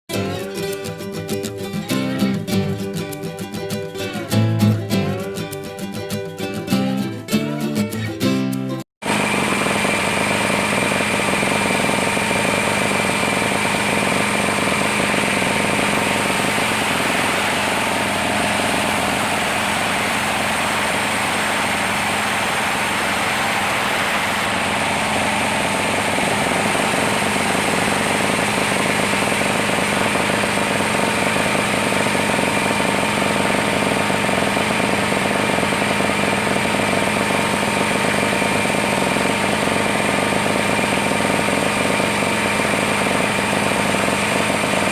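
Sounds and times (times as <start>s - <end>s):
fast rattle: 9.0s - 44.9s
high steady whine: 9.0s - 44.9s
sawmill machinery drone: 9.0s - 44.9s.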